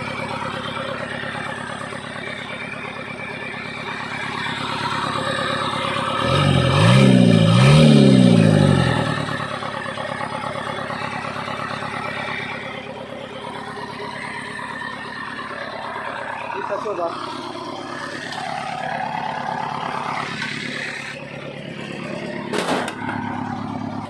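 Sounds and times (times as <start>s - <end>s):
diesel engine revving: 0.0s - 24.0s.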